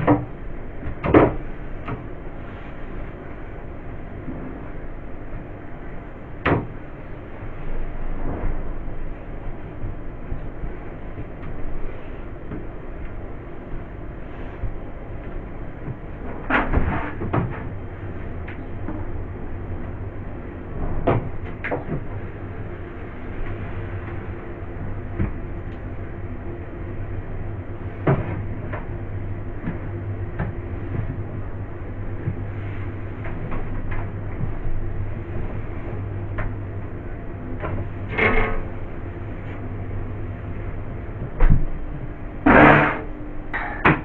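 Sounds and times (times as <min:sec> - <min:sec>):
low background hum: 0:00.0 - 0:44.0.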